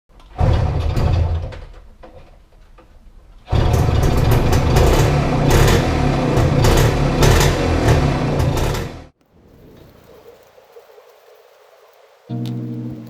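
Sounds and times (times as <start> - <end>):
two-stroke scooter engine running: 3.5 - 9.1.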